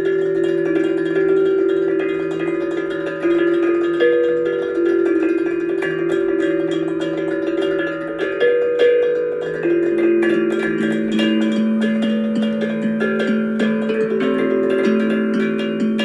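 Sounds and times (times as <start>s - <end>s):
bell-like instrumental music: 0.0s - 16.0s.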